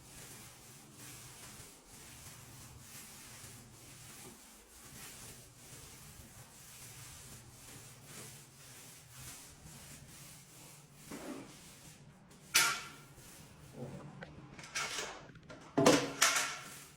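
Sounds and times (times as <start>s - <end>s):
faint rubbing strokes: 0.0s - 14.3s, 16.4s - 16.9s
scrapes and knocks: 10.9s - 16.9s.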